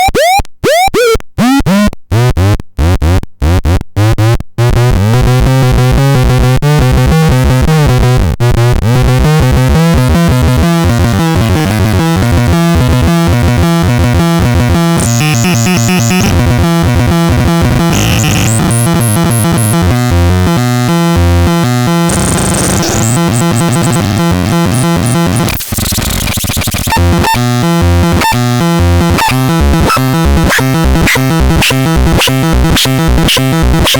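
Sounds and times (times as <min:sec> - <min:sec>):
high electronic chirps: 0:00.0 - 0:01.2, 0:15.0 - 0:16.8, 0:17.5 - 0:19.8, 0:22.0 - 0:27.5, 0:28.1 - 0:28.4, 0:29.2 - 0:33.9
harsh synthesizer noise: 0:10.7 - 0:33.9.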